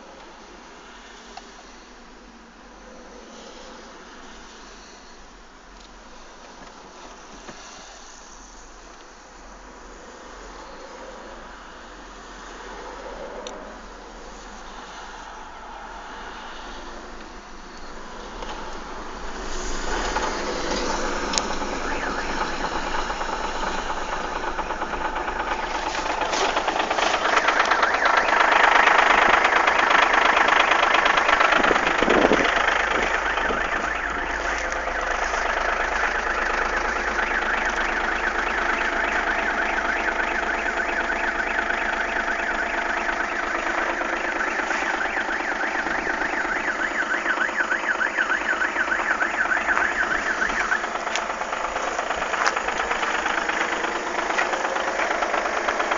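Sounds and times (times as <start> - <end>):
diesel engine knocking: 14.2 - 55.9.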